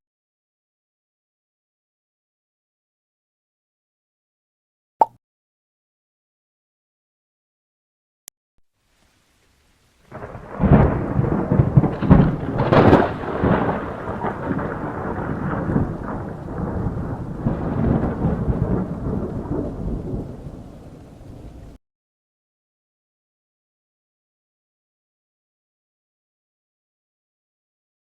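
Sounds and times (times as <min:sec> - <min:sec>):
thunder crack and rumble: 0:10.1 - 0:21.8.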